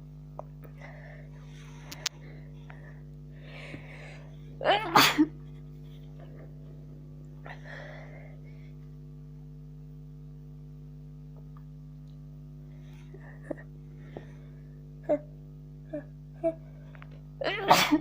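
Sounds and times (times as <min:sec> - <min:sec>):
steady low hum: 0:00.0 - 0:18.0
person breathing: 0:00.8 - 0:04.5, 0:07.4 - 0:08.8, 0:12.6 - 0:14.8.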